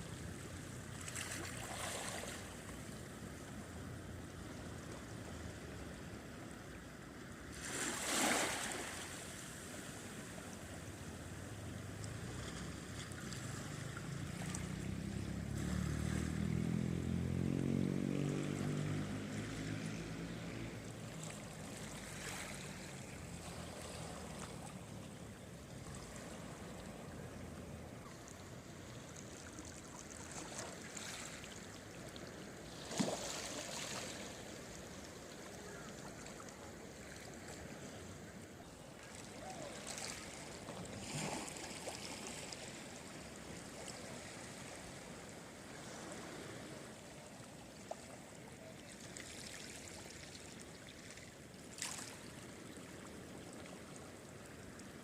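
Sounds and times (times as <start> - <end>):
sea waves washing on shore: 0.1 - 55.0
passing engine hum: 11.4 - 36.6.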